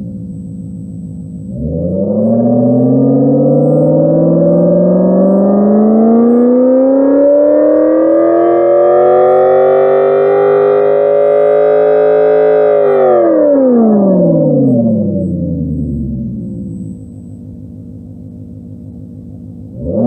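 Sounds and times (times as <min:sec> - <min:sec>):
imitation engine revving from speaker: 0:01.5 - 0:17.0, 0:19.7 - 0:20.0.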